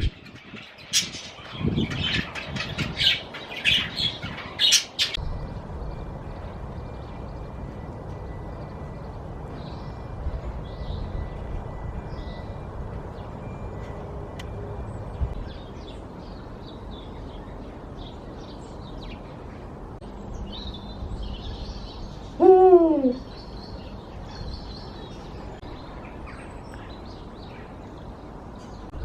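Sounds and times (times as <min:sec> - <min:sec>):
small birds chirping: 0:00.0 - 0:05.2, 0:14.9 - 0:29.0
steady low rumble: 0:00.0 - 0:22.4.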